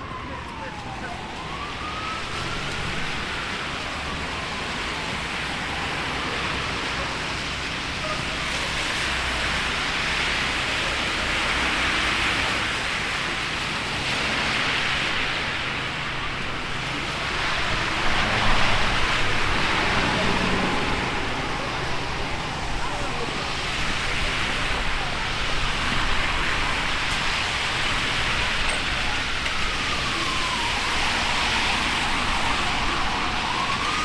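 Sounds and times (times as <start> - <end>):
heavy rain: 0.0 - 34.0
siren: 0.0 - 34.0
gusty wind: 11.2 - 34.0.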